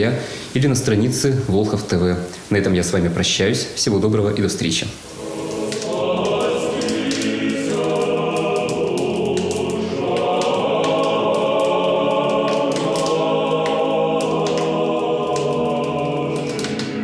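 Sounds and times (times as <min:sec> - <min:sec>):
choir singing held chords: 0:05.1 - 0:17.0.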